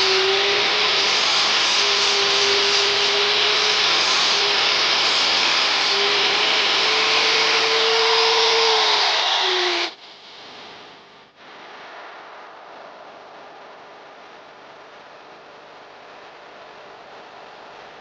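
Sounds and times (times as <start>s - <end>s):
electric power tool whining: 0.0s - 10.0s
faint hiss: 0.0s - 18.0s.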